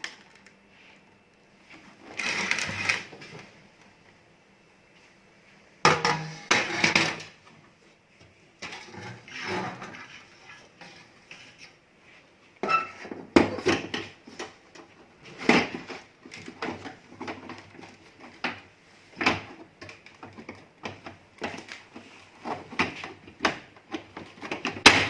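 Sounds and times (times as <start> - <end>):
objects knocking and clattering: 5.8 - 7.4.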